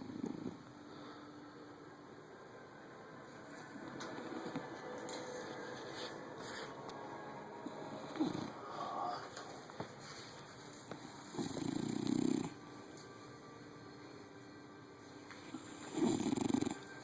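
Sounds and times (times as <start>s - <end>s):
pet snoring: 0.0s - 0.6s, 7.9s - 9.3s, 11.0s - 12.6s, 15.5s - 17.0s.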